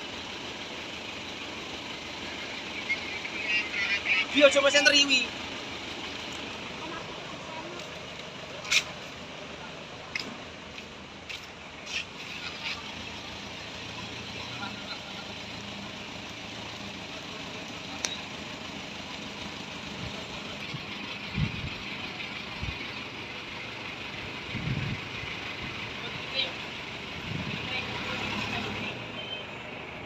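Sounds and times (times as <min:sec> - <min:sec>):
truck engine idling: 0:00.0 - 0:30.0.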